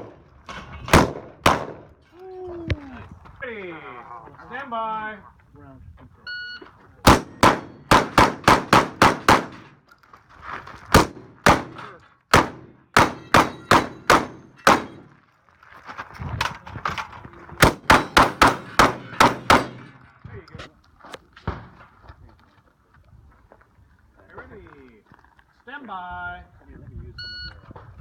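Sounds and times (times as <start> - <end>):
shotgun firing: 0.9 - 1.9, 7.0 - 9.7, 11.0 - 15.1, 17.6 - 20.0.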